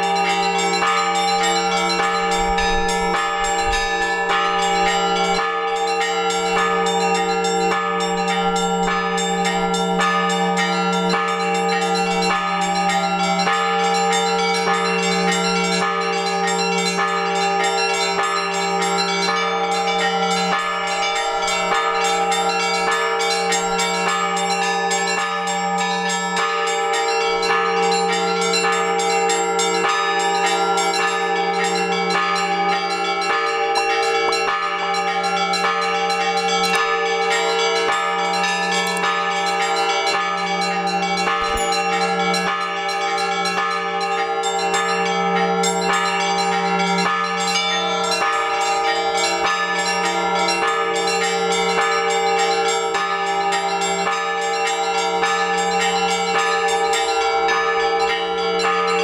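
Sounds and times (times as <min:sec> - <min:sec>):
small high bells chiming: 0:00.0 - 0:59.0
deep bell struck: 0:01.1 - 0:13.4, 0:41.0 - 0:42.6.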